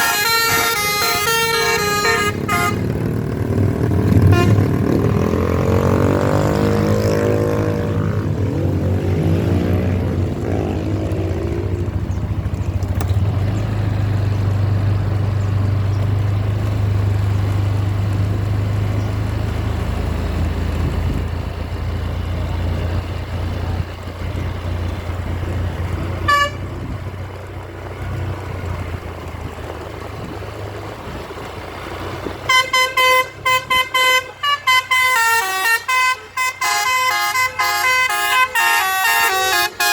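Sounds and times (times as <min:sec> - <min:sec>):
multi-tone horn tooting: 0:00.0 - 0:03.1, 0:04.1 - 0:07.6, 0:26.1 - 0:27.0, 0:32.4 - 0:39.9
bus engine droning: 0:00.0 - 0:39.9.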